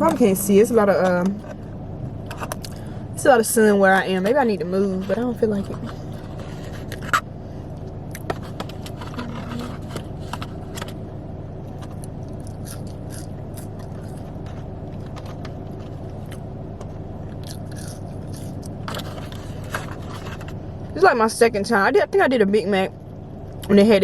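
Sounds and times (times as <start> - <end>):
low hum: 0.0 - 24.0
person biting and chewing food: 2.2 - 2.9, 5.9 - 7.2, 7.8 - 11.0, 11.7 - 20.6.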